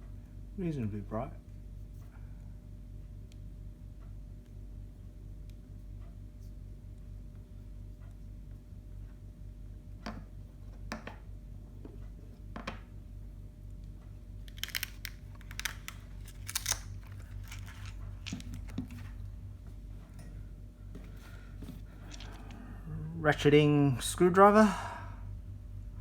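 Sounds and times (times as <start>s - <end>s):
steady low hum: 0.0s - 26.0s
wrapping crinkling and rustling: 14.5s - 19.3s.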